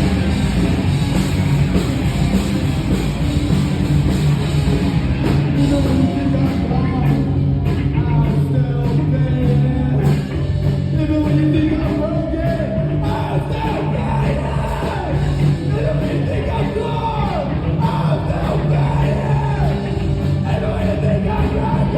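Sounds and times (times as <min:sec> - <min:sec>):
live rock band playing: 0:00.0 - 0:21.9
singer's vocals: 0:05.5 - 0:21.9.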